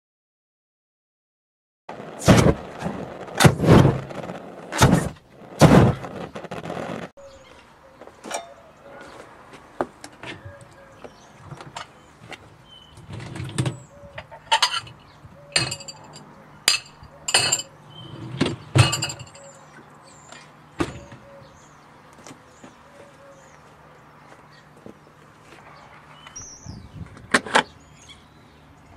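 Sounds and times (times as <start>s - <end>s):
dishwasher parts knocking and clinking: 15.6s - 17.7s, 18.8s - 19.5s.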